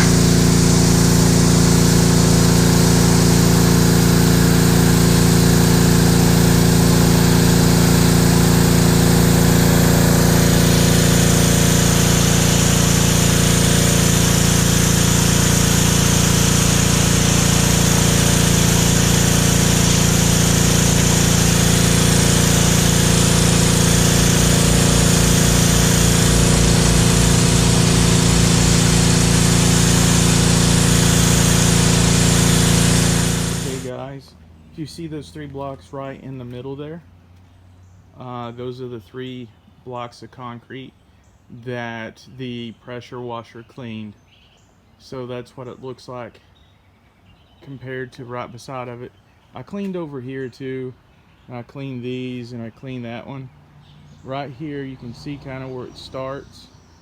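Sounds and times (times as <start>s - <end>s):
high-pressure spray hissing on concrete: 0.0s - 33.9s
pressure washer engine running: 0.0s - 34.2s, 54.0s - 56.6s.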